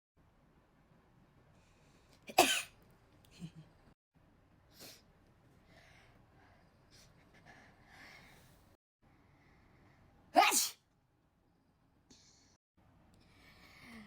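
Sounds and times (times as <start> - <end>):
person sneezing: 10.4 - 10.8.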